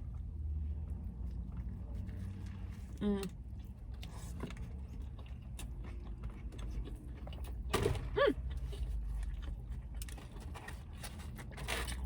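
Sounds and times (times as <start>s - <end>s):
wet chewing: 1.1s - 7.7s, 8.3s - 12.0s.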